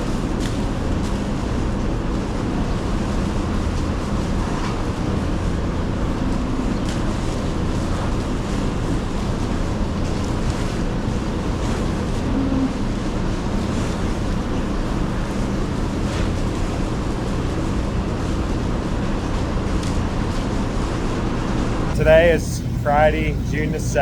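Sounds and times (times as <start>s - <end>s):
low engine rumble: 21.9s - 24.0s.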